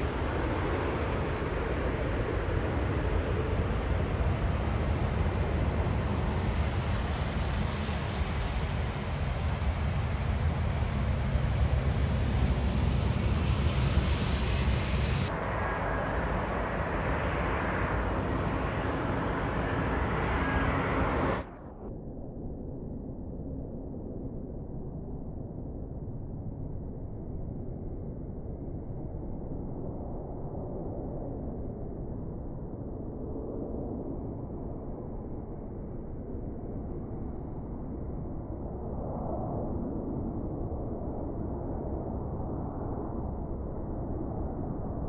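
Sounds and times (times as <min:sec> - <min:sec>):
jet airliner passing overhead: 0:00.0 - 0:21.6.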